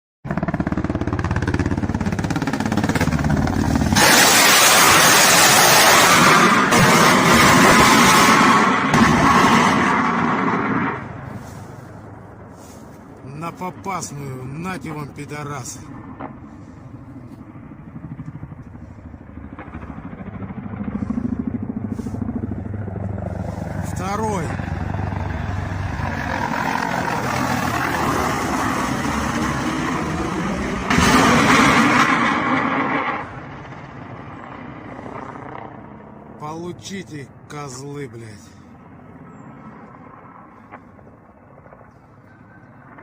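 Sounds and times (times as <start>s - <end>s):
helicopter rotor chopping: 0.2s - 43.0s
turbine engines: 0.3s - 43.0s
rockets launching roar: 2.8s - 11.8s, 25.8s - 33.5s.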